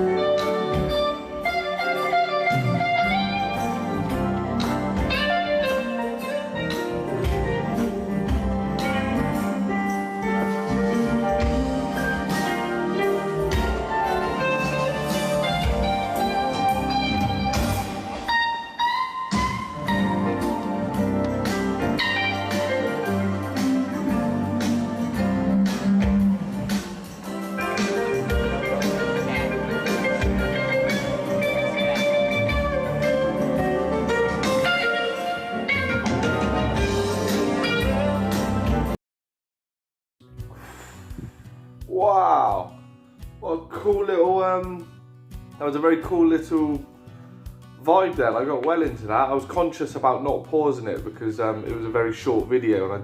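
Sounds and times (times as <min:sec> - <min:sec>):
bass guitar line: 0:00.0 - 0:18.5, 0:19.3 - 0:39.0, 0:40.2 - 0:41.8
drums: 0:00.0 - 0:39.0, 0:40.2 - 0:53.0
guitar chords: 0:00.0 - 0:39.0
live band instrumental groove: 0:00.0 - 0:39.0.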